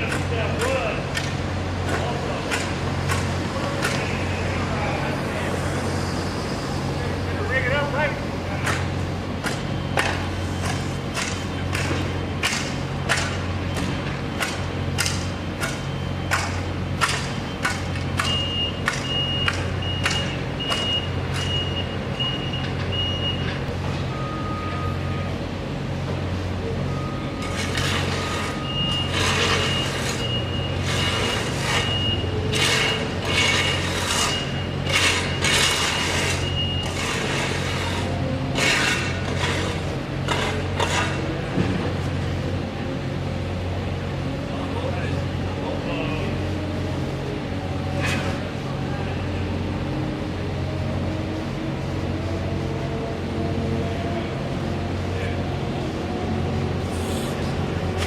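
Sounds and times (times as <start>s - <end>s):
construction engine running: 0.0s - 58.0s
backup alarm beeping: 15.7s - 25.4s, 28.3s - 33.1s.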